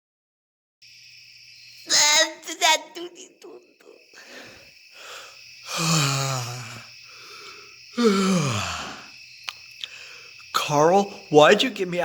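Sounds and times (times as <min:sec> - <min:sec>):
person groaning sleepily: 0:03.5 - 0:09.1.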